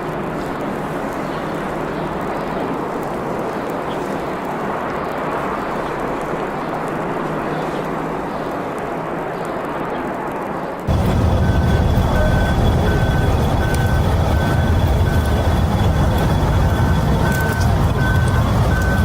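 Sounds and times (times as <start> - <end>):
rushing noise: 0.0 - 19.0
loud low rumble: 10.9 - 19.0
reversing alarm beeping: 10.9 - 19.0.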